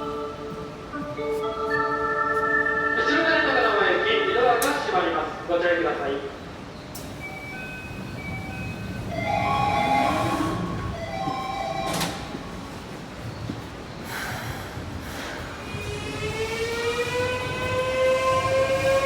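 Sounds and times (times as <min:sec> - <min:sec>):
door closing chimes: 0:07.2 - 0:12.6.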